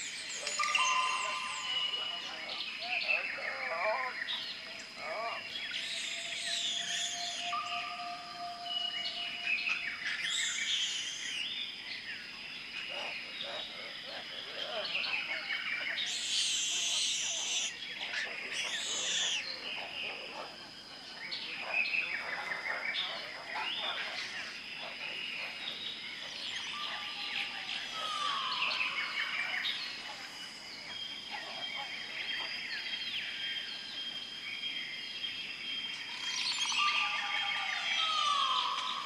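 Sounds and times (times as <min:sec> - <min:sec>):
steady high-pitched whine: 0:00.0 - 0:03.5
birds calling and chirping: 0:00.0 - 0:39.0.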